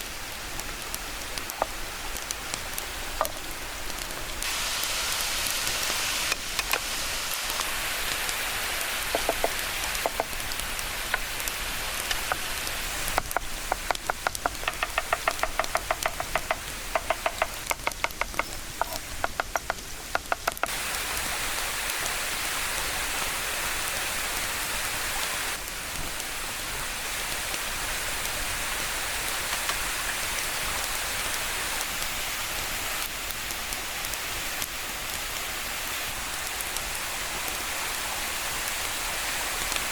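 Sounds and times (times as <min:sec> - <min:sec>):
waterfall rushing: 0:04.4 - 0:32.6
rapid even taps: 0:13.2 - 0:20.7.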